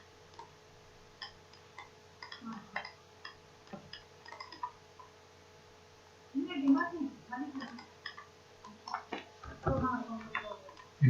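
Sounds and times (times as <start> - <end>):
low electrical hum: 0.0 - 11.0
computer mouse clicks: 1.2 - 5.1, 7.5 - 9.2.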